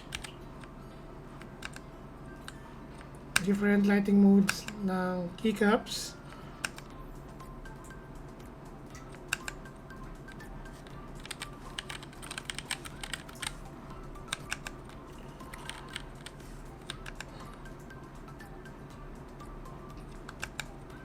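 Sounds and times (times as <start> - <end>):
mechanical keyboard key clicks: 11.2 - 13.5.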